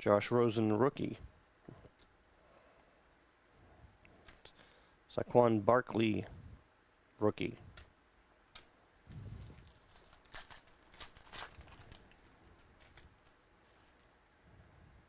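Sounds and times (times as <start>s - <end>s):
trading cards rustling and clicking: 8.5s - 14.0s.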